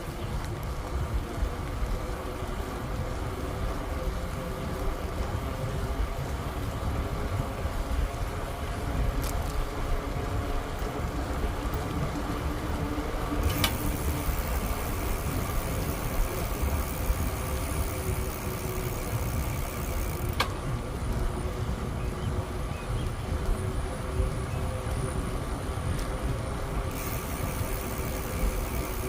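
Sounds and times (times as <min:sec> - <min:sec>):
wind rumbling on microphone: 0:00.0 - 0:29.0
sharp clicks: 0:13.4 - 0:15.0.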